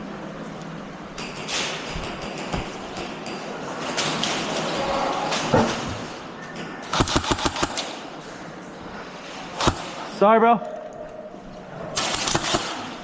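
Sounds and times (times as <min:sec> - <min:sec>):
airsoft gun rapid shots: 0:06.9 - 0:08.0, 0:09.6 - 0:10.1, 0:12.0 - 0:13.0.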